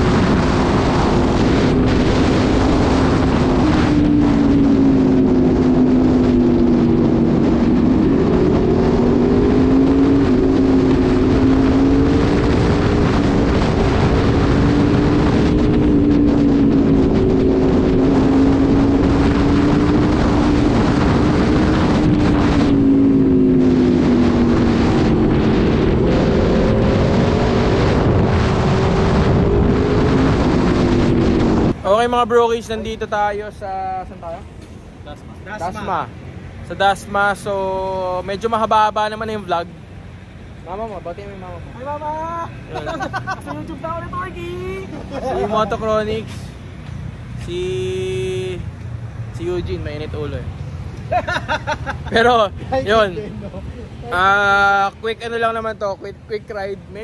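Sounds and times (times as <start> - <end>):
motorcycle engine cruising: 0.0 - 33.3
wind rushing over microphone: 0.0 - 57.0.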